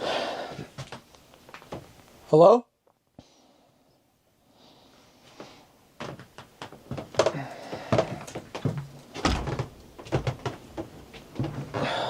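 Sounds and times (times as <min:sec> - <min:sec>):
knocks and clatters: 0:06.0 - 0:11.9.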